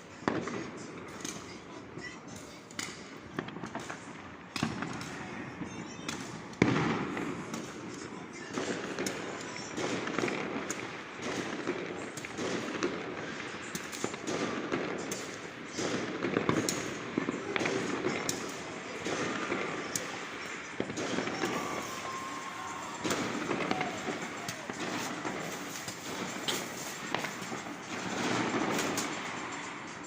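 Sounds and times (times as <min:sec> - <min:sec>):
fireworks bangs and crackling: 0:00.0 - 0:30.0
loud sharp firework bang: 0:20.8 - 0:29.4.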